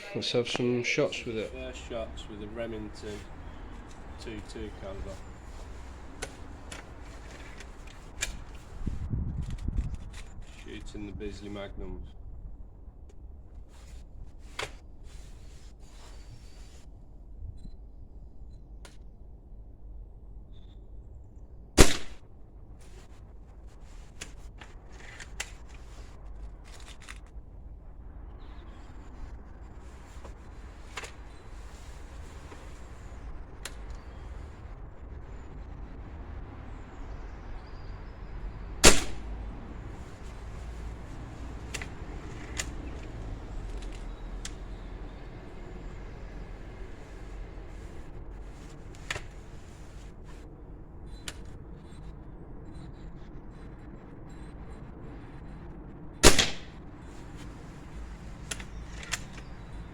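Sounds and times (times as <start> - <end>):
low steady rumble: 0.0 - 59.9
clicks and handling noises: 5.1 - 8.8, 9.4 - 10.9, 22.8 - 27.4, 29.8 - 34.2, 40.0 - 44.8, 47.0 - 50.4, 51.2 - 51.6, 57.2 - 59.9
air rifle shot: 21.8 - 22.2, 38.8 - 39.3, 56.2 - 56.8
light clicks: 41.6 - 44.7, 58.4 - 59.7.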